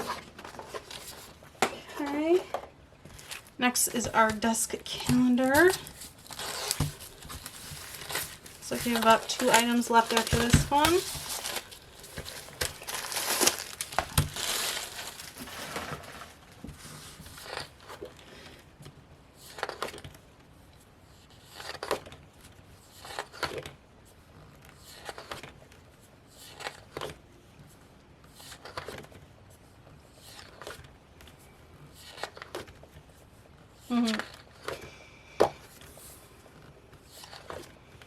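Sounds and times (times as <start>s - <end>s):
calendar pages turning: 0.0s - 18.2s, 21.4s - 22.2s, 24.6s - 25.6s, 32.0s - 33.2s, 35.7s - 38.0s
packaging crinkling: 3.1s - 3.7s, 4.4s - 16.7s.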